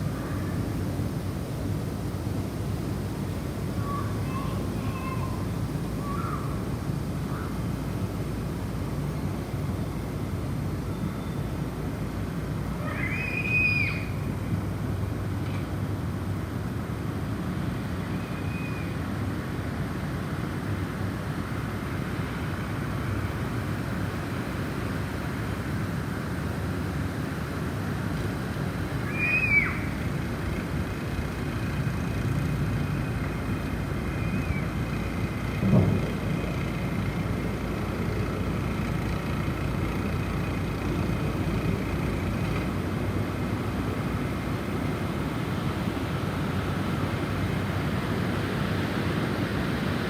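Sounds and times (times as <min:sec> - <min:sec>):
snowstorm wind blowing: 0:18.9 - 0:50.0.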